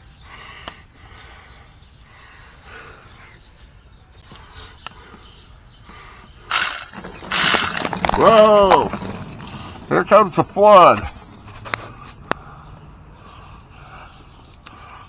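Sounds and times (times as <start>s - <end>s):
metal tool clicks and rattles: 6.5s - 10.1s.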